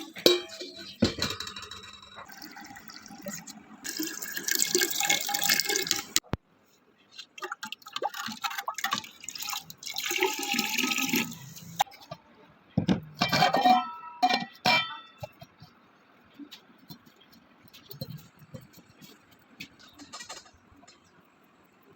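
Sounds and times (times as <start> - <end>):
glass clinking: 0.0 - 2.8, 13.2 - 15.4
liquid splashing and pouring: 2.2 - 6.2, 7.4 - 11.8.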